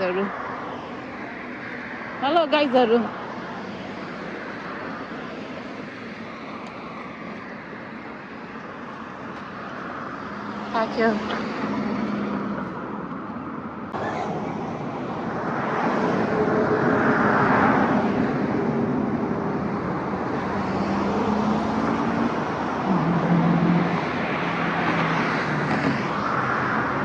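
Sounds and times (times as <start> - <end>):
road traffic: 0.0 - 27.0
vehicles passing close: 0.0 - 27.0.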